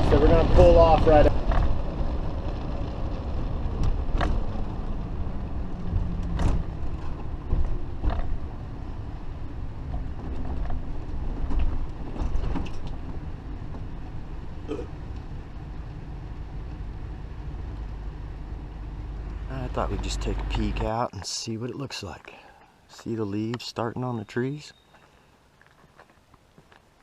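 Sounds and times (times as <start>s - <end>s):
motorhome diesel engine running: 0.0s - 21.0s
creaks and knocks from coach: 3.8s - 4.6s, 6.2s - 8.5s, 9.9s - 13.9s.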